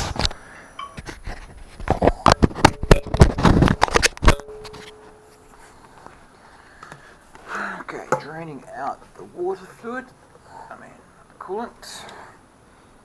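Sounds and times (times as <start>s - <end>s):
sharp clicks and clanks: 0.0s - 5.2s
faint steady ringing tone: 0.0s - 7.4s.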